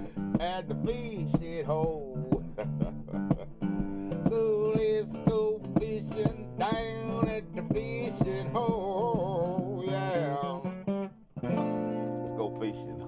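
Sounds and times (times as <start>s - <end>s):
strummed acoustic guitar: 0.0s - 13.0s.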